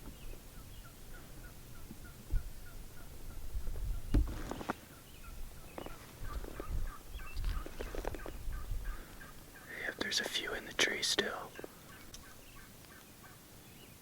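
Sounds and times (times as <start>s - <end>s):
turkeys gobbling: 11.8s - 13.4s.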